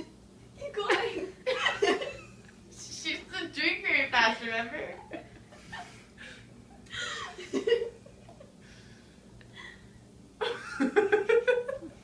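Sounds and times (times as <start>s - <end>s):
person laughing and breathing hard: 5.2s - 12.0s.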